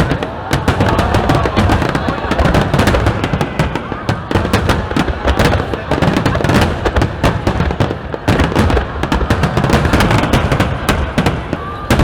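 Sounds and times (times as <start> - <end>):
fireworks crackling and popping: 0.0 - 12.0.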